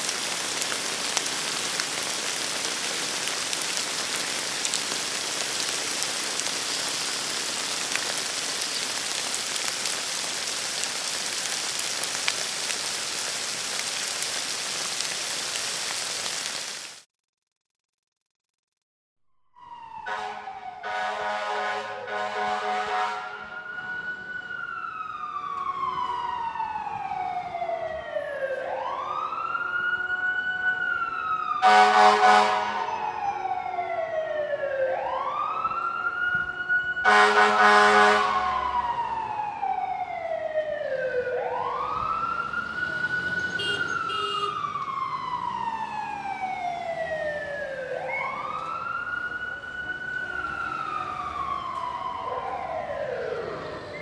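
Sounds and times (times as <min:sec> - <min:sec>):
emergency siren wailing: 0:00.0 - 0:16.3, 0:19.6 - 0:54.0
vehicle horn blasts: 0:20.1 - 0:23.5, 0:31.6 - 0:32.8, 0:37.1 - 0:38.5, 0:43.6 - 0:44.6.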